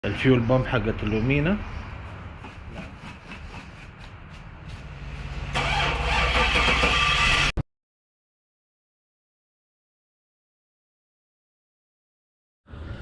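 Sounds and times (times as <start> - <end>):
starter motor cranking: 5.5 - 7.5.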